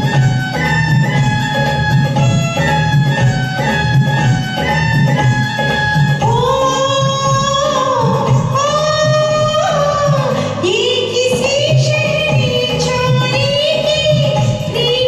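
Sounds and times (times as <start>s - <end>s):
instrumental music with steady beat: 0.0s - 15.0s
woman singing: 6.2s - 15.0s.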